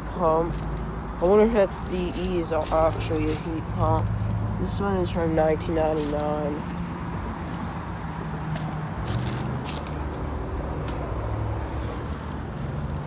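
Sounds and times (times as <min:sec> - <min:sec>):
short crackles and scrapes: 0:08.5 - 0:10.3, 0:11.8 - 0:13.0.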